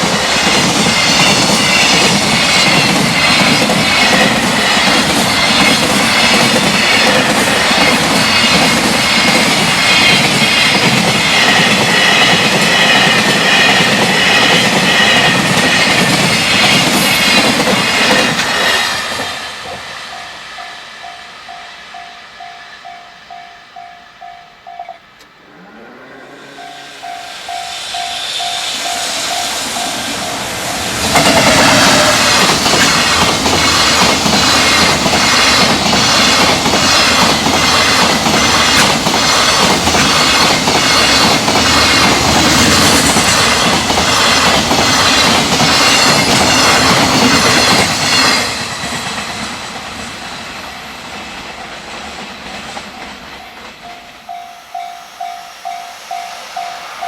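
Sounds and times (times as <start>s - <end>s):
freight train passing: 0.0s - 57.0s
train wheels clicking on rails: 0.0s - 57.0s
level crossing warning bell: 18.6s - 25.8s, 26.4s - 32.5s, 53.4s - 57.0s.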